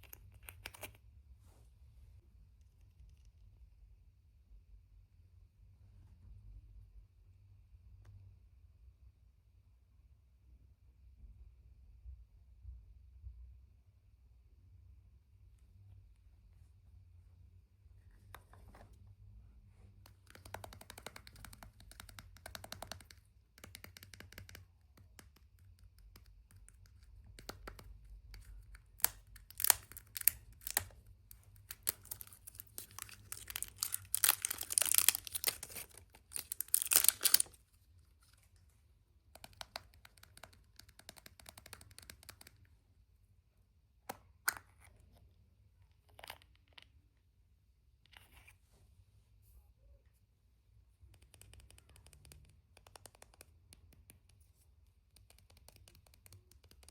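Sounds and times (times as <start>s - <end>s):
wrapper rustling and crackling: 31.7s - 37.6s.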